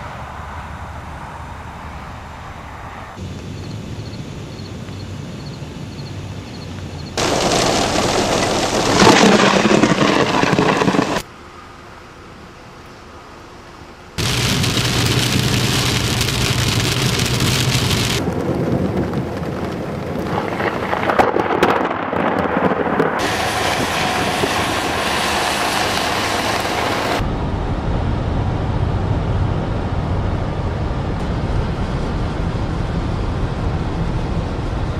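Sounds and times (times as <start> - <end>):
heavy rain: 7.2 - 11.2, 14.2 - 27.6
thunder: 7.2 - 11.2, 14.2 - 34.9.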